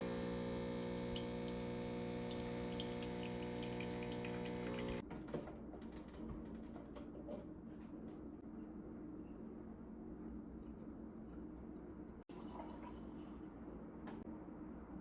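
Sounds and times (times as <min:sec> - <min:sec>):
hum of held tones: 0:00.0 - 0:05.0.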